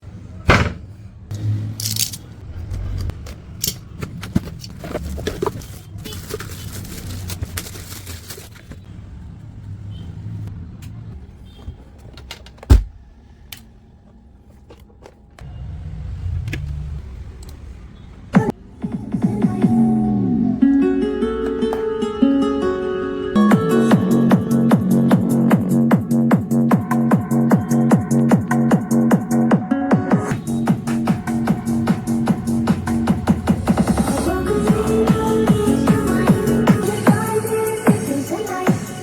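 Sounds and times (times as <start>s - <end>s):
sharp knock: 0.5s - 0.8s, 12.7s - 13.0s
packaging rustling and scraping: 4.0s - 8.9s.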